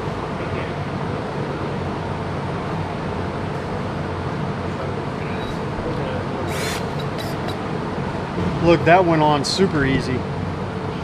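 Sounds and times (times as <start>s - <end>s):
hiss: 6.4s - 7.6s.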